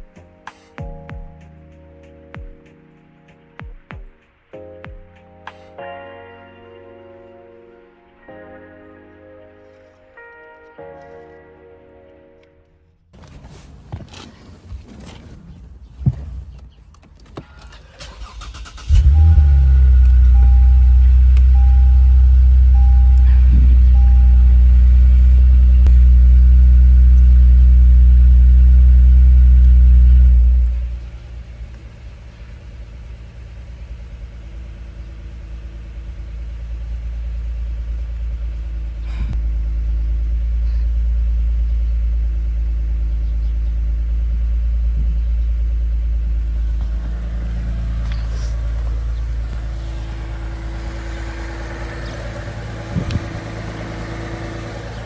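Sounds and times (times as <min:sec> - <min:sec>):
engine low rumble: 0:13.1 - 0:55.0
car engine low drone: 0:13.2 - 0:55.0.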